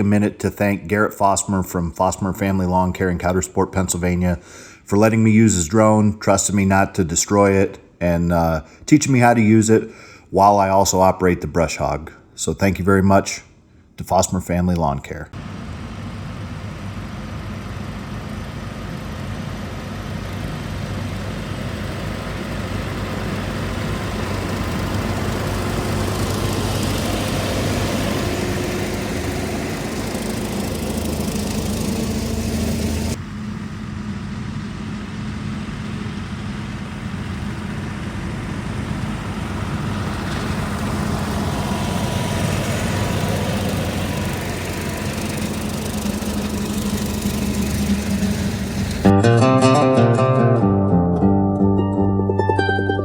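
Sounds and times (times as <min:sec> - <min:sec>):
tractor engine drone: 0:00.0 - 0:11.2, 0:15.3 - 0:53.0
mower whirring: 0:15.4 - 0:49.8.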